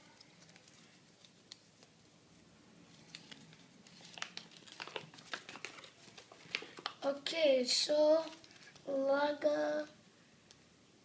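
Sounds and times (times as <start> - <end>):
plastic packaging crinkling: 0.0 - 2.0, 2.9 - 7.3, 8.1 - 8.9.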